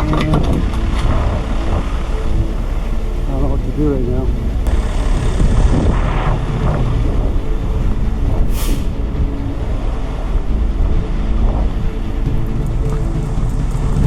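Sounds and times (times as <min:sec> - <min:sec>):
heavy vehicle engine rumbling: 0:00.0 - 0:14.0
air hiss: 0:08.5 - 0:09.0.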